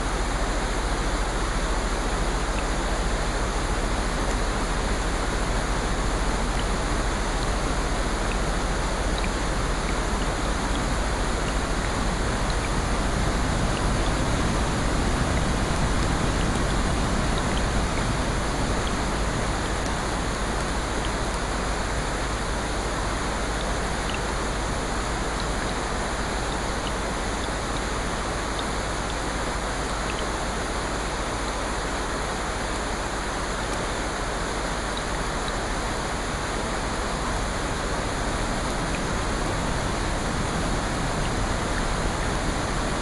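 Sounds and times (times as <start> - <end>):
rushing water hiss: 0.0 - 43.0
faint ticks: 9.1 - 12.8.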